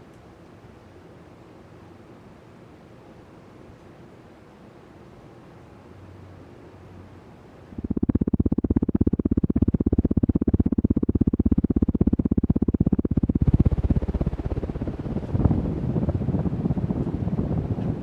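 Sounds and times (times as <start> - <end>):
ceiling fan air pulsing: 0.0 - 18.0
wind noise: 7.8 - 18.0.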